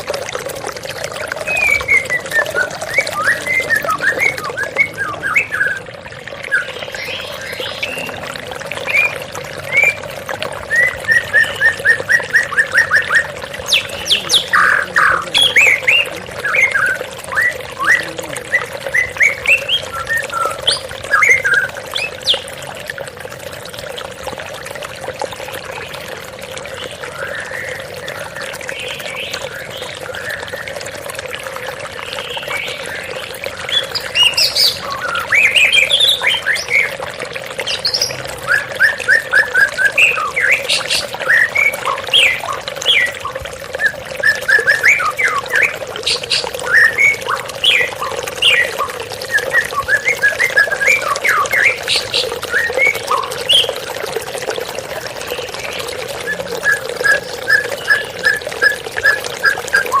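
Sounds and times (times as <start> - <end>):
waterfall rushing: 1.4 - 5.8
songbird whistling song: 1.4 - 22.5, 26.8 - 31.0, 32.1 - 37.0, 37.6 - 53.8, 55.3 - 60.0.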